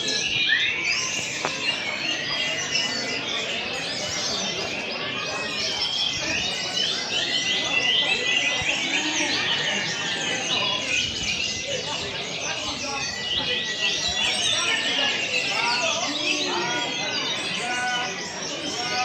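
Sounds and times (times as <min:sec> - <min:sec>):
birds singing: 0:00.0 - 0:19.0
low background hubbub: 0:00.0 - 0:19.0.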